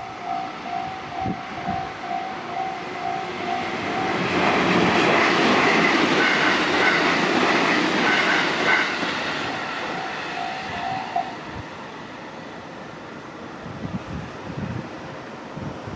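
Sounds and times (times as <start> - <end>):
train wheels clattering on rails: 0.0 - 11.4.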